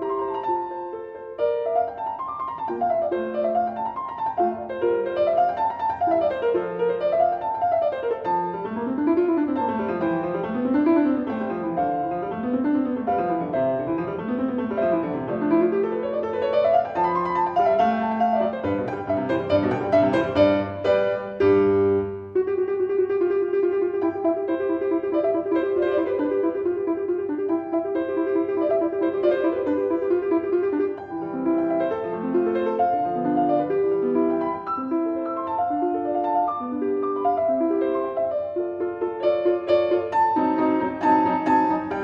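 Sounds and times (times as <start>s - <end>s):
piano arpeggios: 0.0s - 42.0s.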